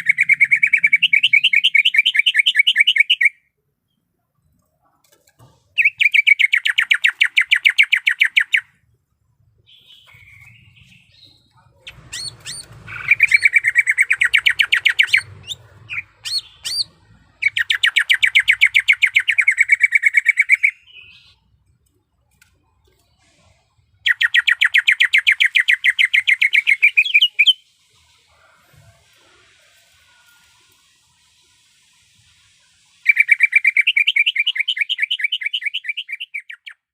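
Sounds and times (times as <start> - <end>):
bird trilling: 0.0 - 3.4, 5.8 - 8.8, 9.7 - 21.4, 24.0 - 27.7, 33.0 - 36.9
bird chips and whistles: 0.0 - 3.5, 5.7 - 8.8, 9.7 - 21.4, 24.0 - 27.7, 29.7 - 36.9.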